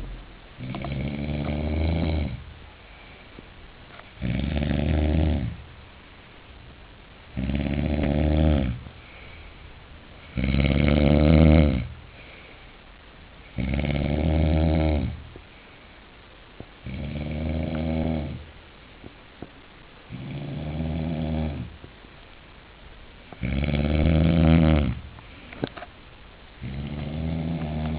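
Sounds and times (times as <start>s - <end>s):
man snoring loudly: 0.6s - 2.4s, 4.2s - 5.6s, 7.3s - 8.8s, 10.3s - 11.9s, 13.6s - 15.2s, 16.8s - 18.4s, 20.1s - 21.7s, 23.4s - 25.0s, 26.6s - 27.9s.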